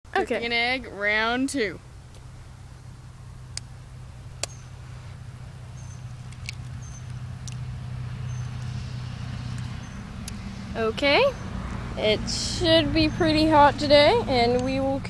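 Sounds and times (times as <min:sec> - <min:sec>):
steady low hum: 0:00.1 - 0:15.0
sharp clicks and light taps: 0:06.2 - 0:07.7.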